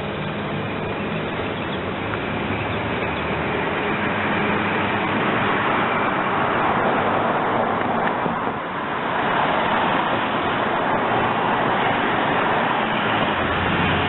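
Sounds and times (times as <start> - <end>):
diesel locomotive engine hum: 0.0 - 14.0.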